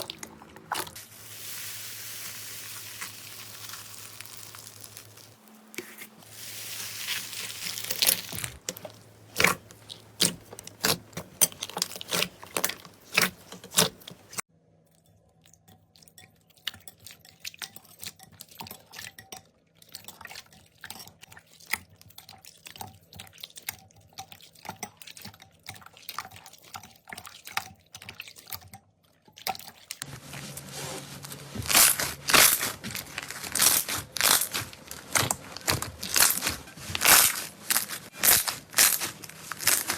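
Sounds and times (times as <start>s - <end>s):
slime clicking and popping: 11.7s - 14.0s.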